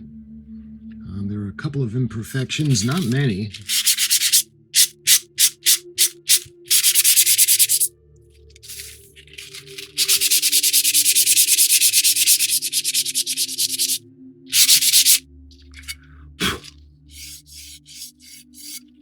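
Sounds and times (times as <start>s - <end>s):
sandpaper rubbing back and forth: 2.3s - 7.9s, 8.6s - 15.2s, 15.8s - 16.0s, 17.1s - 18.8s.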